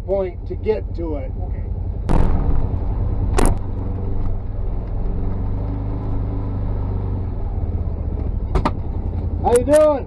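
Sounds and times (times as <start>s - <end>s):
engine droning: 0.0s - 10.0s.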